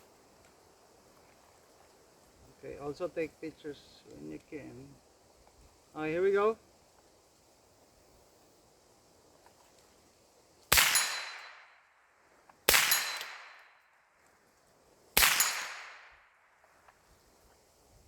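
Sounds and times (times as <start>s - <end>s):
rifle shots with echo: 10.7s - 11.7s, 12.7s - 13.7s, 15.2s - 16.2s.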